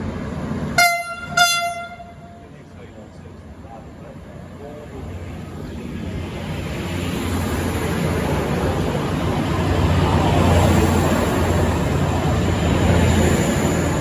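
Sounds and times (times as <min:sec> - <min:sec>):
diesel train engines running hard: 0:00.0 - 0:14.0.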